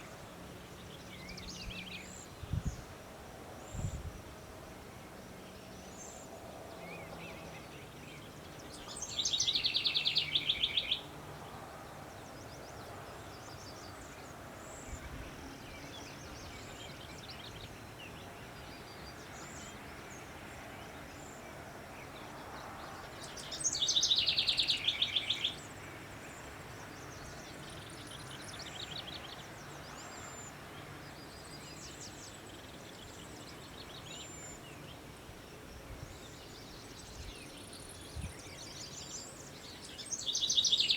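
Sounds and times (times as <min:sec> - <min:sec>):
songbird trilled song: 0:05.5 - 0:11.1, 0:22.0 - 0:35.0, 0:35.8 - 0:40.9.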